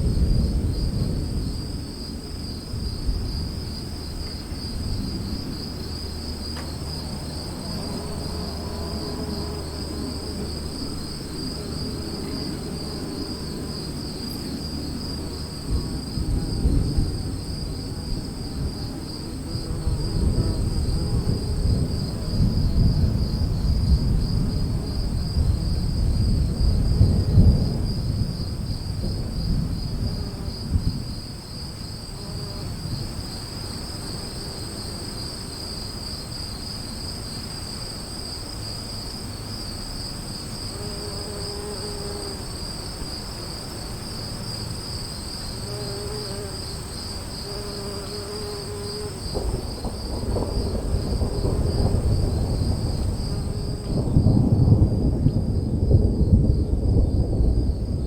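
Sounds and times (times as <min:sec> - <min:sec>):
thunder rumbling: 0:00.0 - 0:31.7, 0:49.1 - 0:58.0
insects chirring: 0:00.0 - 0:58.0.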